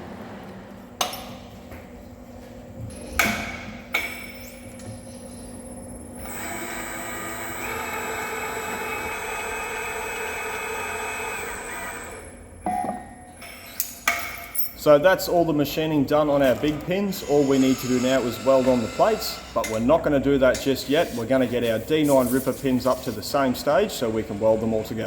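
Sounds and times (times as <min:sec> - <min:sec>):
metal lathe whining: 0:06.2 - 0:12.4, 0:17.2 - 0:19.8, 0:23.6 - 0:25.0.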